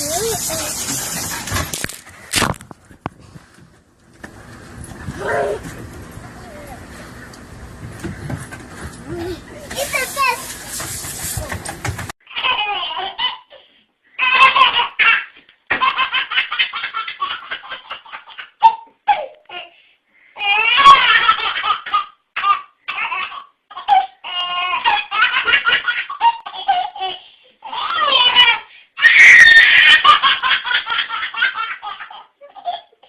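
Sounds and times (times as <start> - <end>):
baby laughing: 12.3 - 19.6, 20.4 - 28.7, 29.5 - 33.0.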